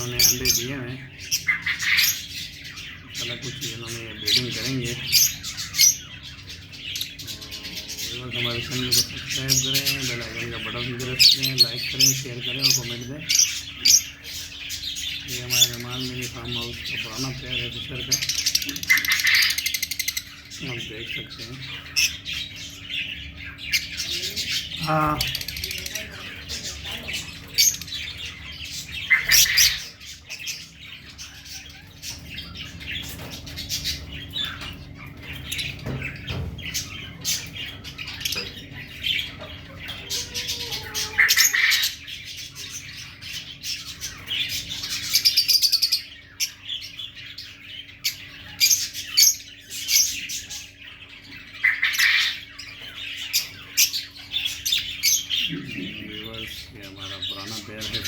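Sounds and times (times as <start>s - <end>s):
lovebirds chirping and squawking: 0.0s - 58.0s.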